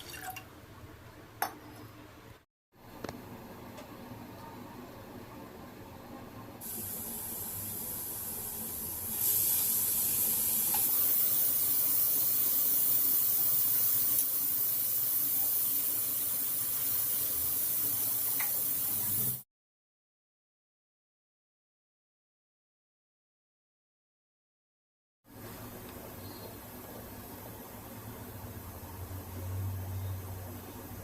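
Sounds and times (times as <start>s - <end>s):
steady hissing: 6.6s - 19.4s.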